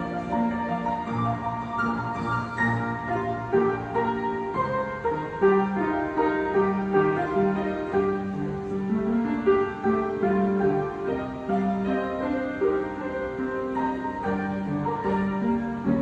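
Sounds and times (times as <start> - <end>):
solo piano melody: 0.0 - 16.0.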